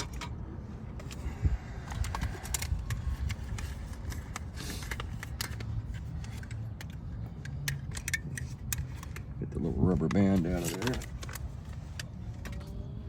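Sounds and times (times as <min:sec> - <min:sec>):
plastic parts clicking and rattling: 0:00.0 - 0:12.8.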